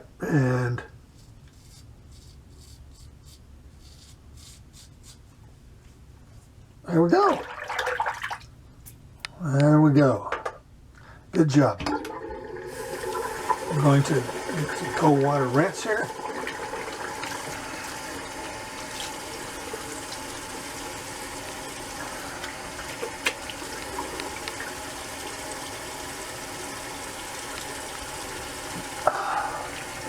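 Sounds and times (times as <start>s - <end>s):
tap water running into sink: 11.8s - 30.0s.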